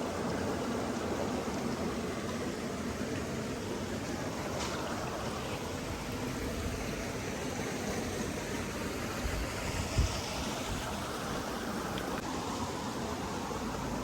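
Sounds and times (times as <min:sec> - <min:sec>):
steady rushing noise: 0:03.7 - 0:14.0.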